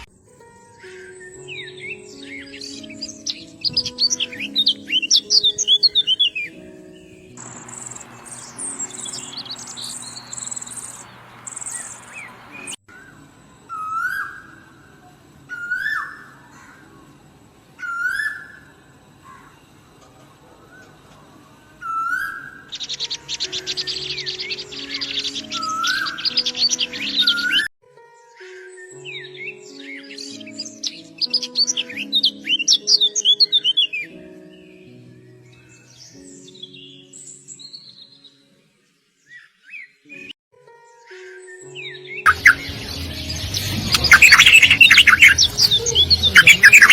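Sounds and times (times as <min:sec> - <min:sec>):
soft background music: 0:00.0 - 0:46.9
birds chirping: 0:02.7 - 0:12.8, 0:41.6 - 0:46.9
bird whistled call: 0:07.4 - 0:12.8, 0:42.2 - 0:43.0, 0:43.9 - 0:46.9.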